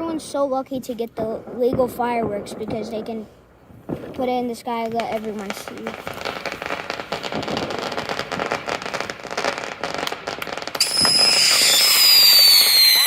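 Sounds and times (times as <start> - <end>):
fireworks crackling: 0.0 - 13.0
shrill firework whistle: 10.7 - 13.0.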